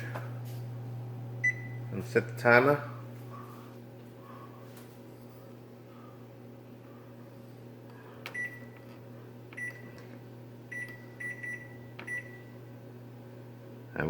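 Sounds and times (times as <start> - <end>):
steady low hum: 0.0 - 14.0
oven panel beeps: 1.4 - 1.9, 8.3 - 8.8, 9.6 - 10.0, 10.7 - 12.6.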